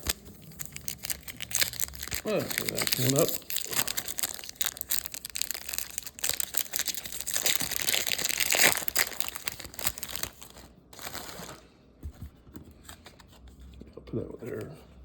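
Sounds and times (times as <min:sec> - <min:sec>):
plastic wrapper crinkling: 0:00.0 - 0:11.6.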